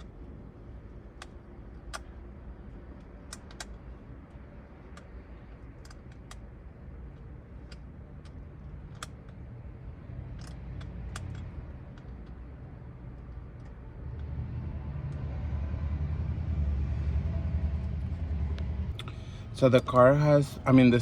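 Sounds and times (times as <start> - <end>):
low rumble: 13.6 - 21.0.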